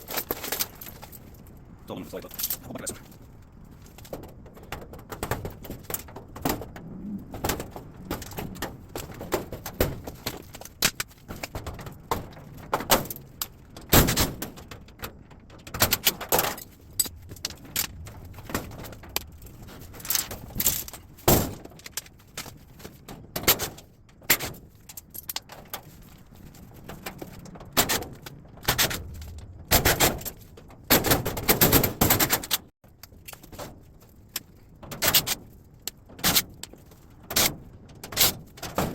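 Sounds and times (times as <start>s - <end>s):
metal clanks and rattles: 0.0s - 38.9s.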